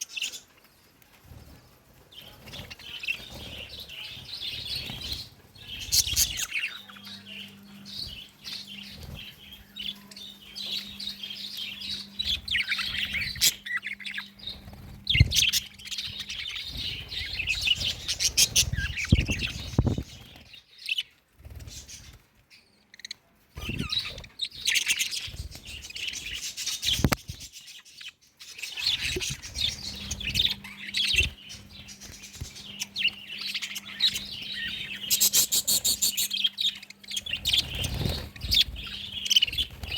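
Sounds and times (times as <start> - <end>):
faint steady hum: 0.1 - 20.4, 28.8 - 39.9
budgerigars chirping: 2.6 - 20.3, 22.9 - 39.9.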